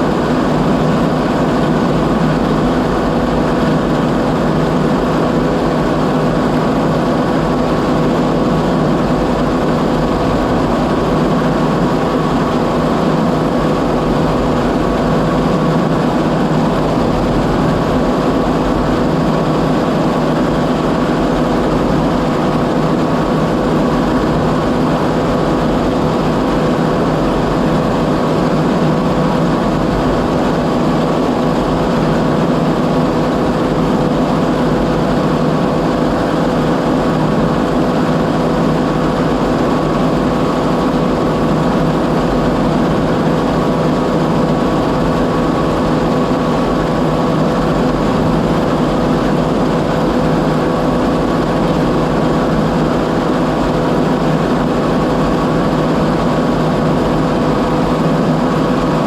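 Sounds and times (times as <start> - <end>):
combine engine drone: 0.0 - 59.0
steady machine whine: 0.0 - 59.0.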